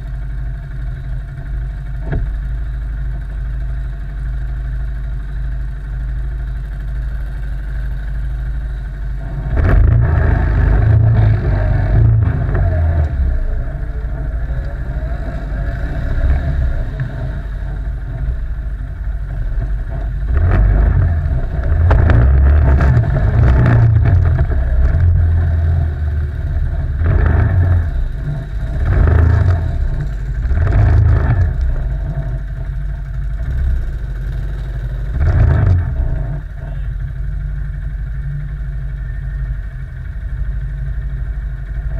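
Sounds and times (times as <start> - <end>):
quad engine revving: 8.7 - 37.0.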